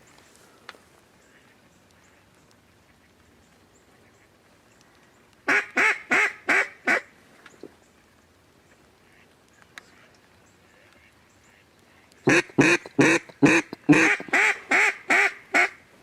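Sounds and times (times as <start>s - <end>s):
duck call quacks: 12.3s - 15.8s.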